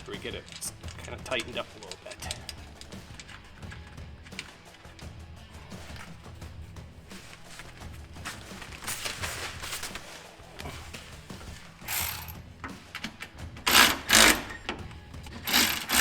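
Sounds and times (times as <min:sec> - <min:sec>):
short rattling bursts: 0:00.0 - 0:16.0
socket ratchet clicking: 0:11.8 - 0:16.0.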